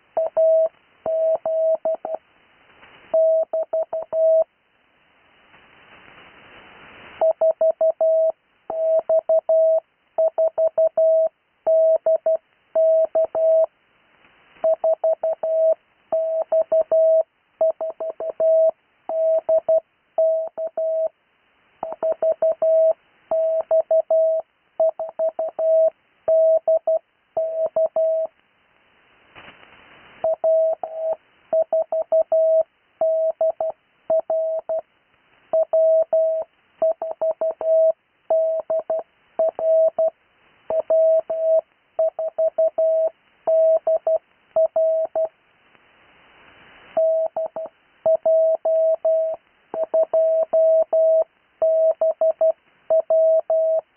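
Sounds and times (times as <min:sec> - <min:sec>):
morse code tone: 0:47.0 - 0:53.8.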